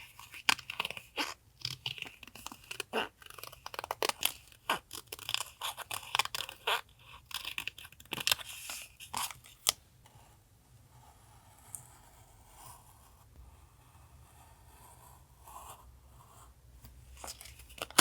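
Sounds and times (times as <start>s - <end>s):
paper rustling and snapping: 17.2s - 18.0s.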